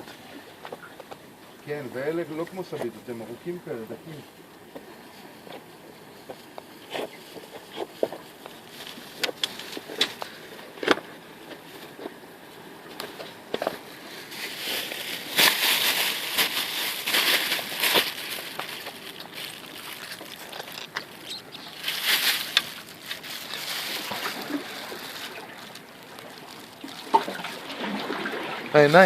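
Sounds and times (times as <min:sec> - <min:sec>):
water splashing and sloshing: 0:07.3 - 0:29.0.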